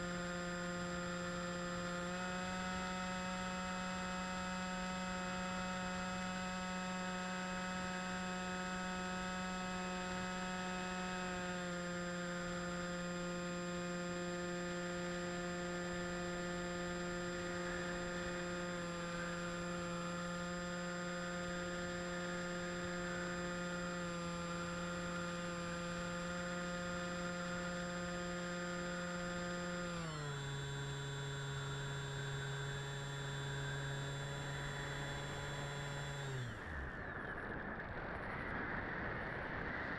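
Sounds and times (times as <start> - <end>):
electric motor whine: 0.0 - 39.9.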